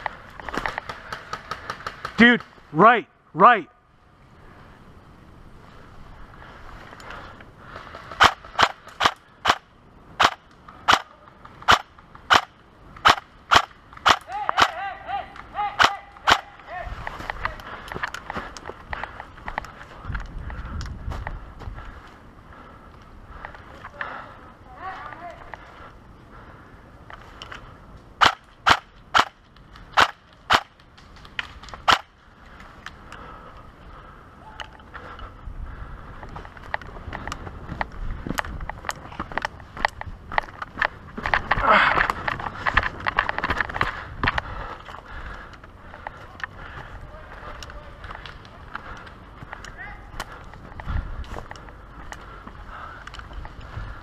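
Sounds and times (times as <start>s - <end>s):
airsoft gun shots: 11.7s - 14.8s, 28.2s - 29.4s.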